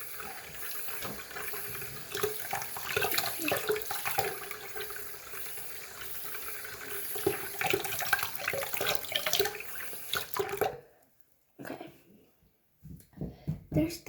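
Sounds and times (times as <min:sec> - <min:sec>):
sink tap running: 0:00.0 - 0:10.8
water splashing over toys: 0:00.0 - 0:10.8.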